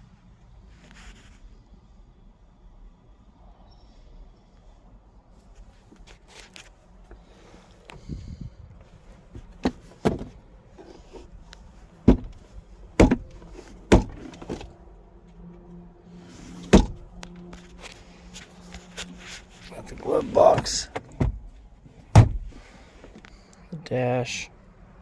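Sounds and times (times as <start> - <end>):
car doors and panels clunking: 8.8 - 14.8, 16.3 - 17.5, 19.8 - 23.2.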